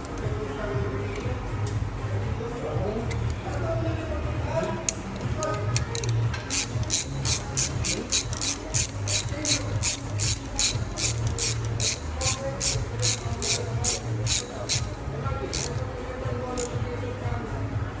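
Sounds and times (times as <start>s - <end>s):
ratchet wrench clicking: 4.9s - 15.9s, 16.6s - 16.8s.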